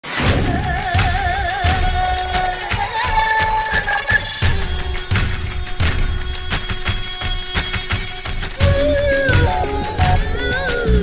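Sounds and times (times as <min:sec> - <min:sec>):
heavy bass beat: 0:04.4 - 0:11.0.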